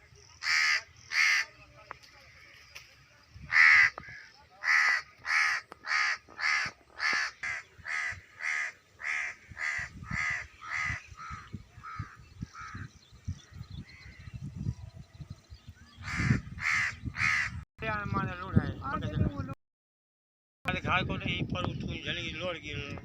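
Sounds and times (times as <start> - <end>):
bird giving harsh calls: 0.4 - 1.6, 3.4 - 13.0, 16.0 - 17.6.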